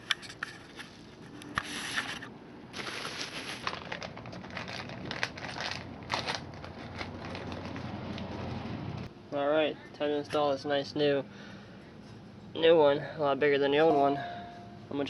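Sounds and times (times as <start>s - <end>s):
plastic packaging crinkling: 1.6s - 8.4s.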